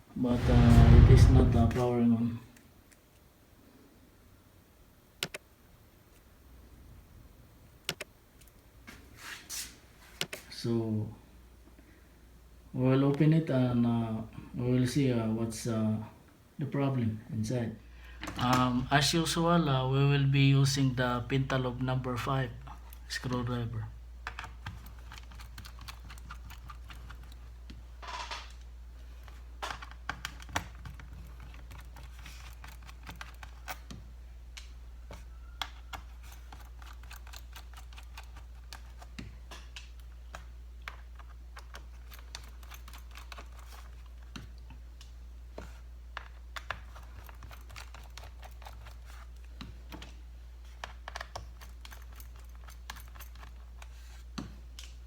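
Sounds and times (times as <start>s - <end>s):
steady low hum: 0.0s - 2.6s.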